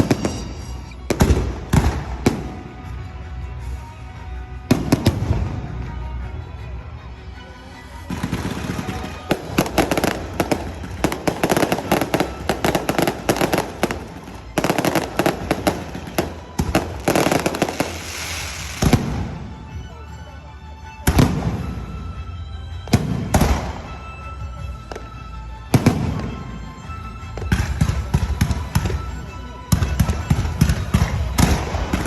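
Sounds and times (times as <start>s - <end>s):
fireworks crackling bangs: 0.0s - 2.9s, 8.0s - 19.6s, 27.4s - 32.0s
loud firework bangs: 8.1s - 19.4s.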